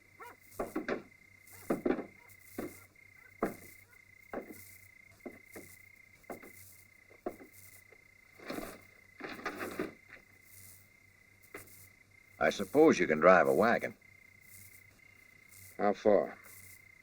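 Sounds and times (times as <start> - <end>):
faint high-pitched whine: 0.0 - 17.0
sharp knocks and clicks: 0.6 - 4.6.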